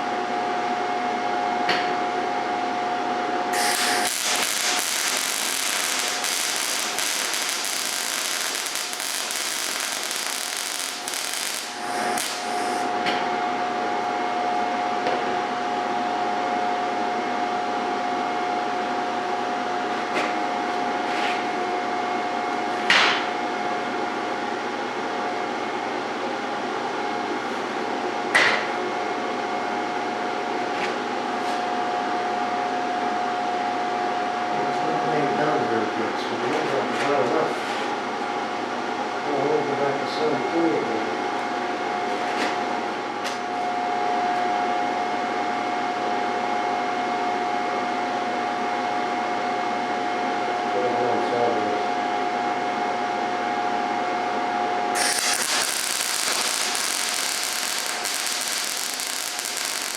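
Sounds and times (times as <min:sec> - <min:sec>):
machine whine: 0:03.5 - 0:14.4, 0:55.0 - 0:59.9
welder arc crackling: 0:03.6 - 0:12.9, 0:55.0 - 0:59.9.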